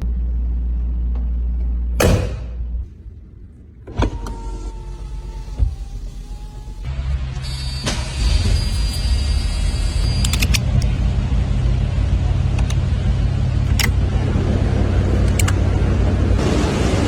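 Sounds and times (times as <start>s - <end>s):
pickup engine idling: 2.0s - 17.0s
short clicks: 10.0s - 10.9s.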